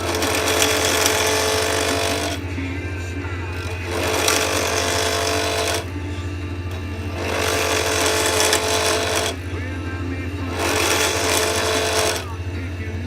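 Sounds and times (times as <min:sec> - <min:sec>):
tool cutting rasping hiss: 0:00.0 - 0:02.4, 0:03.6 - 0:05.9, 0:07.2 - 0:09.5, 0:10.5 - 0:12.4
wood lathe motor hum: 0:00.0 - 0:13.0.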